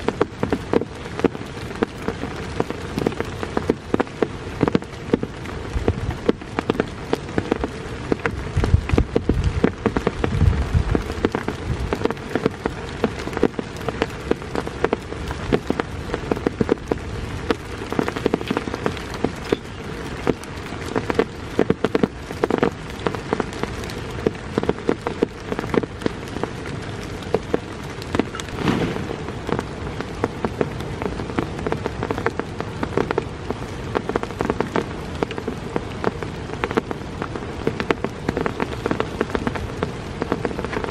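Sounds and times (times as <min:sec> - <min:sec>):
heavy rain falling: 0:00.0 - 0:40.9
heavier deeper drop hits: 0:28.3 - 0:29.9.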